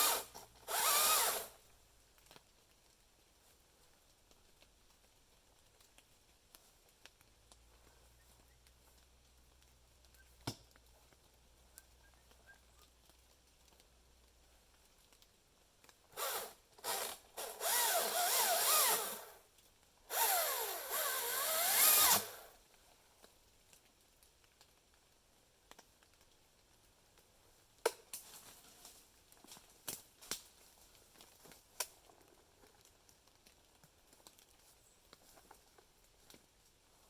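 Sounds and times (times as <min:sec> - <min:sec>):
electric chainsaw cutting: 0:00.0 - 0:01.6, 0:16.2 - 0:19.4, 0:20.1 - 0:22.5.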